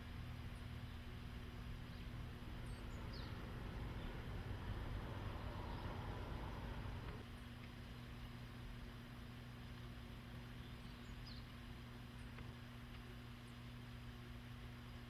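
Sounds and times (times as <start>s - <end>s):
steady low hum: 0.0s - 15.0s
faint bird chirps: 0.5s - 6.6s, 10.5s - 11.6s.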